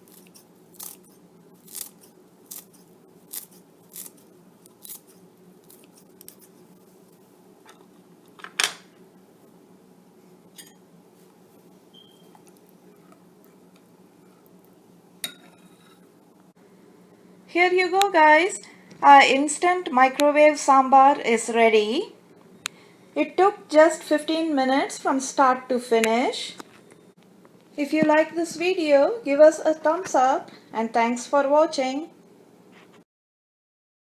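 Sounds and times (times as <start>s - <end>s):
scissors snipping herbs: 0.0s - 6.6s.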